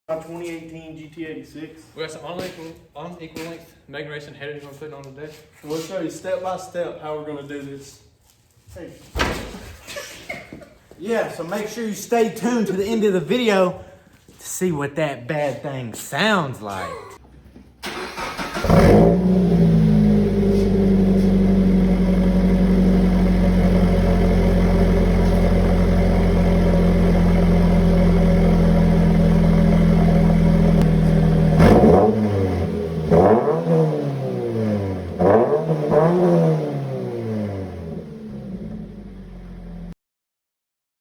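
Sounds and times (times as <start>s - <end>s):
car engine idling and revving: 17.9s - 40.0s.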